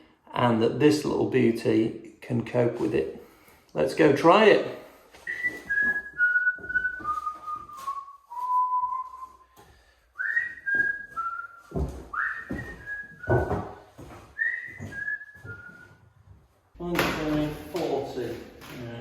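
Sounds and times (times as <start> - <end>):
person whistling a tune: 5.2 - 9.6, 10.2 - 13.8, 14.4 - 16.0.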